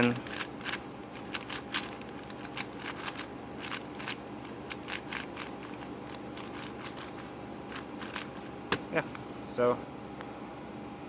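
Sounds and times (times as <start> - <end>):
puzzle cube clicking as turned: 0.0 - 8.3.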